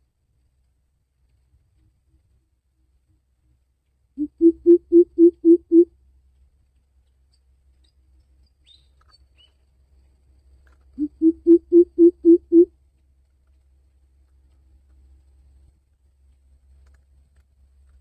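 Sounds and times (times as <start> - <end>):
bird deep hooting: 4.2 - 5.9, 11.0 - 12.7.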